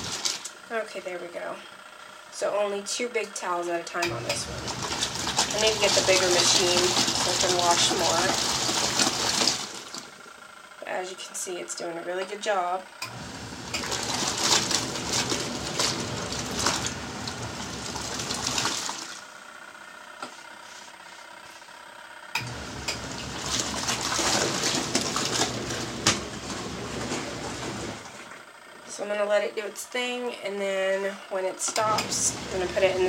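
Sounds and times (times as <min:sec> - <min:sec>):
washing machine water churning: 0:00.0 - 0:00.9, 0:03.9 - 0:10.2, 0:12.6 - 0:19.3, 0:22.4 - 0:28.6, 0:31.7 - 0:33.0.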